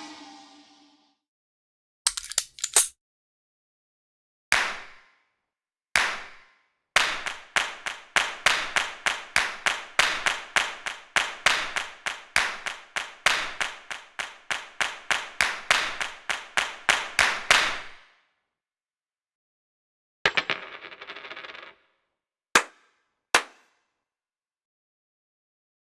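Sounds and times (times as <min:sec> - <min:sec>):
sharp clap-like strikes: 0:22.6 - 0:22.8, 0:23.4 - 0:23.7.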